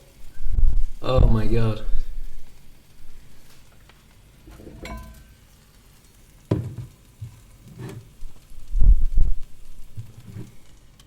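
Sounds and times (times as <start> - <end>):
ringing clink: 4.8 - 5.3.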